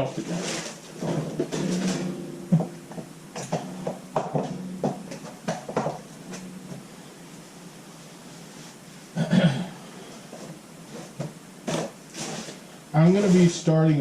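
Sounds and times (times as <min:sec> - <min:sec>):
faint low hum: 0:00.0 - 0:14.0
shelf parts knocking together: 0:01.0 - 0:06.8.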